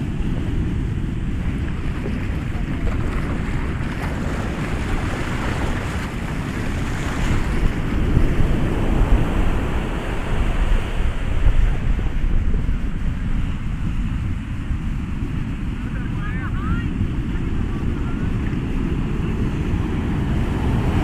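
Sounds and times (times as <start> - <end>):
ocean surf washing ashore: 0.0 - 21.0.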